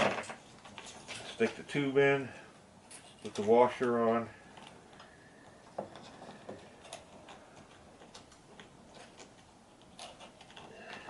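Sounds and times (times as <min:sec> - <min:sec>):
small parts clicking and tapping: 0:02.9 - 0:11.0.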